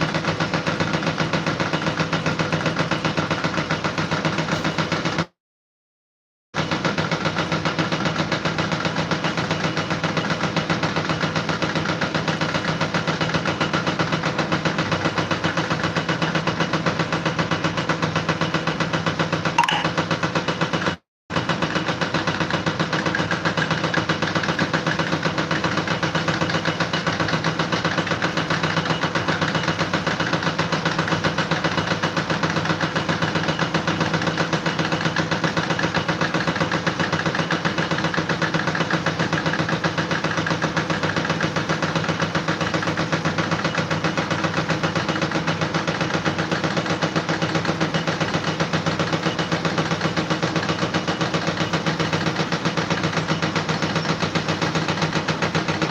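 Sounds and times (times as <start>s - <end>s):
engine running with fast pulse: 21.4s - 55.9s.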